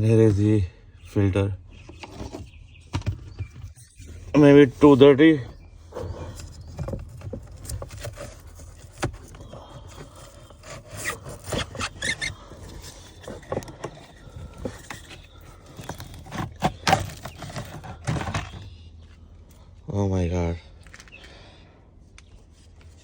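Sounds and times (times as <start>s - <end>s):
filter scraping against plastic: 1.7s - 18.8s
clicks and knocks of handling: 6.3s - 18.7s.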